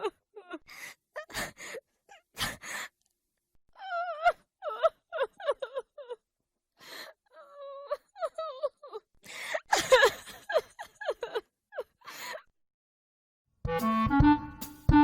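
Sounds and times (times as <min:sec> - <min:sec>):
woman crying and sobbing: 0:00.0 - 0:03.0, 0:03.8 - 0:12.5
wailing cry: 0:03.8 - 0:06.2, 0:07.3 - 0:09.1
sharp gasping inhales: 0:09.3 - 0:09.6.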